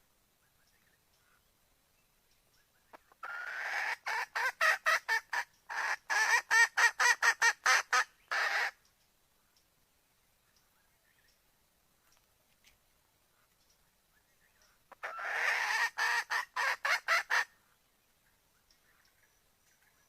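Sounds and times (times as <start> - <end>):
hen clucking: 2.9 - 8.8, 14.9 - 17.5
hen calling: 2.9 - 8.9, 14.5 - 17.8.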